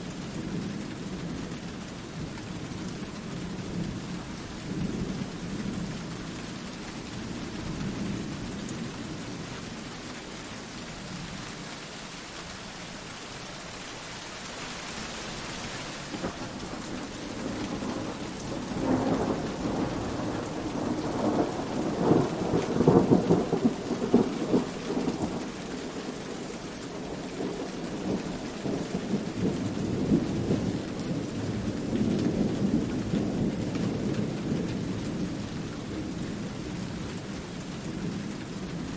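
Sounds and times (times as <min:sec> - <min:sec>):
steady rain: 0:00.0 - 0:38.9
rolling thunder: 0:16.1 - 0:25.5.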